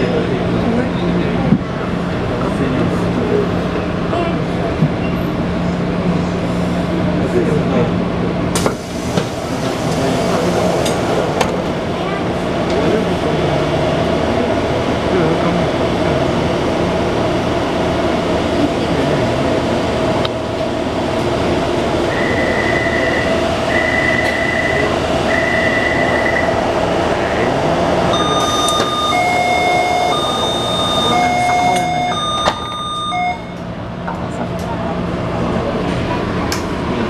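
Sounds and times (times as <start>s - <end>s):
rumbling train wheels: 0.0s - 32.8s
train whine: 0.0s - 37.0s
long electronic beeps: 22.1s - 26.6s, 28.1s - 33.6s
chime tones: 28.1s - 33.6s.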